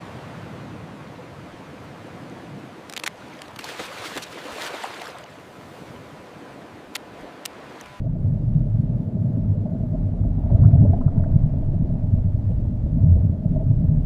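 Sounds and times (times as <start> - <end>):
underwater crackling clicks and fizzing: 2.9 - 3.7
underwater hiss and rumble: 7.7 - 14.0.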